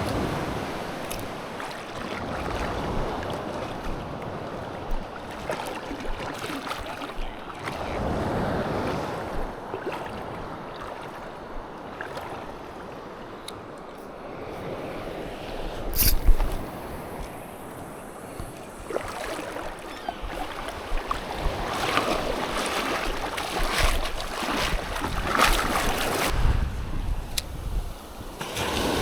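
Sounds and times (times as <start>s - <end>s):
sea waves washing: 0.0s - 29.0s
wind on microphone: 23.6s - 29.0s.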